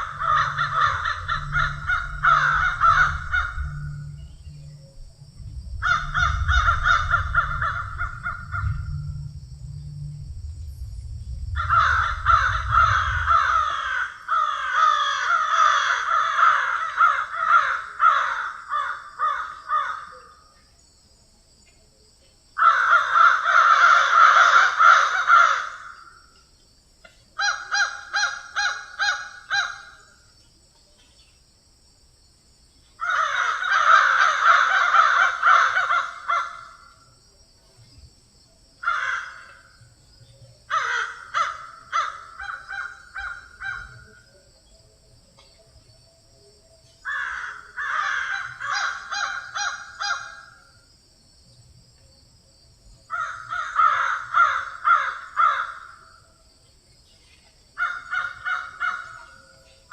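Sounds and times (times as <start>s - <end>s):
crows cawing: 0.0s - 4.2s, 5.8s - 9.1s, 11.6s - 20.3s, 22.6s - 26.2s, 27.4s - 30.1s, 33.0s - 37.1s, 38.8s - 39.8s, 40.7s - 44.1s, 47.0s - 50.6s, 53.1s - 56.2s, 57.8s - 59.4s.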